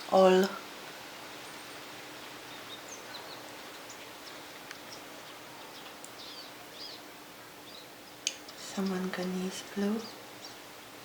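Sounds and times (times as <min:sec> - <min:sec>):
faint steady hiss: 0:00.0 - 0:11.0
light ticks: 0:03.7 - 0:05.0.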